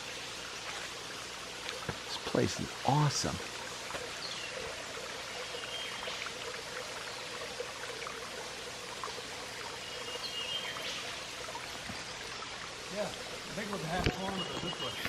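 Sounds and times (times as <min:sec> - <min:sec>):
waterfall rushing: 0:02.1 - 0:03.4.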